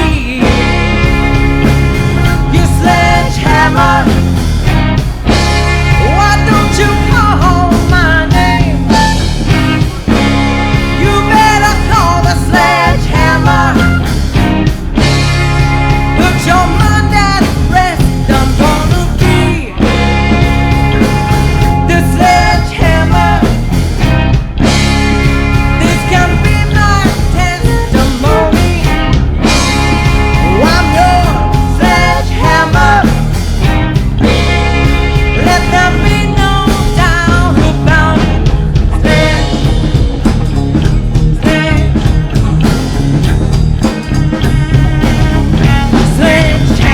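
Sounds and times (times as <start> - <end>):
rock band playing: 0.0 - 46.9.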